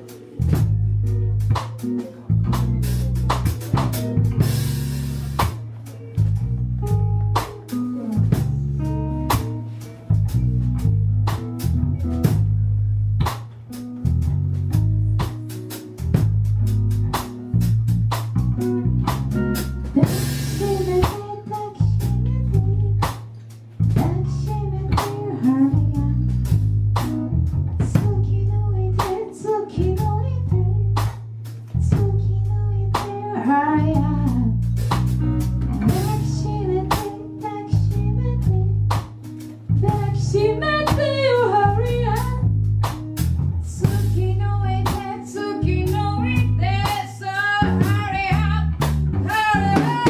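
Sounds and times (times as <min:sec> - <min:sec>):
bass guitar: 0:00.0 - 0:50.0
drum kit: 0:00.0 - 0:50.0
electric guitar: 0:00.0 - 0:50.0.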